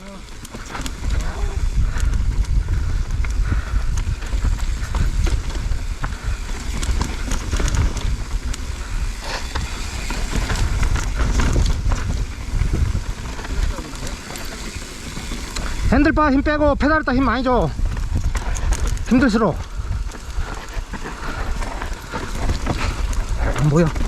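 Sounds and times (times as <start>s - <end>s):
bike clicks and rattles: 0.0s - 16.2s, 16.8s - 24.0s
wind buffeting microphone: 0.0s - 24.0s.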